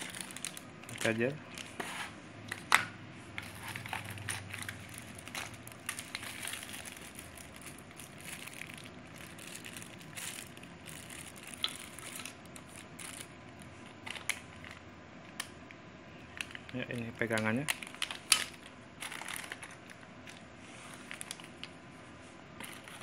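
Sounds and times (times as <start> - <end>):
packaging crinkling: 0.0 - 1.8, 3.4 - 15.5, 16.3 - 21.8, 22.6 - 23.0.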